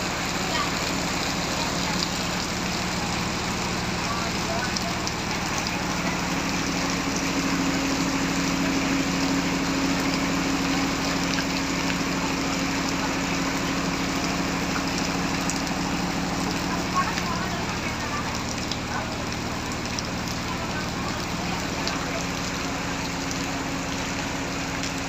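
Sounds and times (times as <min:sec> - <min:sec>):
engine running steadily: 0:00.0 - 0:25.0
heavy rain falling: 0:00.0 - 0:25.0.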